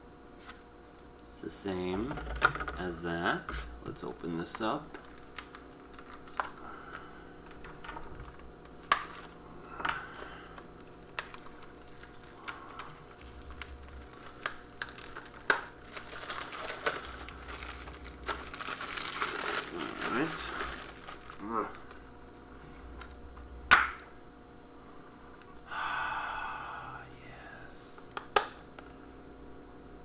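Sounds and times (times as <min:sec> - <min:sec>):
plastic wrap crinkling: 0:04.7 - 0:07.1, 0:08.2 - 0:09.4, 0:10.1 - 0:22.1
plastic wrap clicks and snaps: 0:04.9 - 0:06.6, 0:08.2 - 0:09.4, 0:10.8 - 0:22.0.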